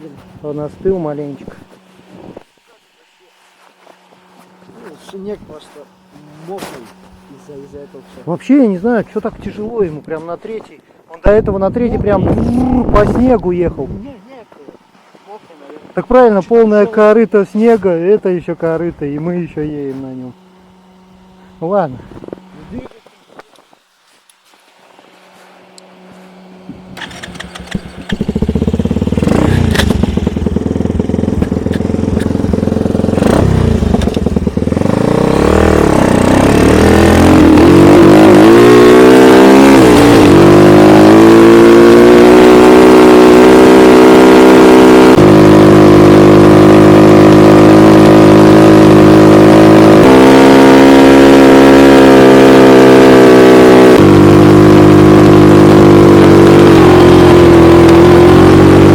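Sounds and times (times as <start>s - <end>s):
snowmobile engine running: 26.1s - 58.9s.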